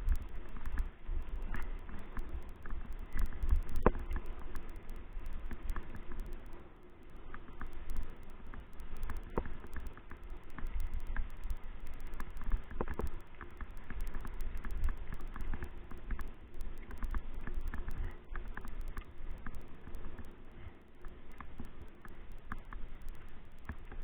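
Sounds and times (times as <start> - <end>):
low steady rumble: 0.0 - 24.0
small clicks and knocks: 0.0 - 24.0.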